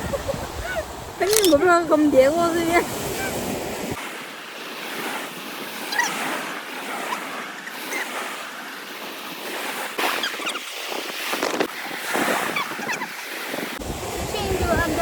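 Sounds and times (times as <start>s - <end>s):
sea waves washing onto beach: 0.0s - 15.0s
wind blowing on microphone: 0.0s - 15.0s.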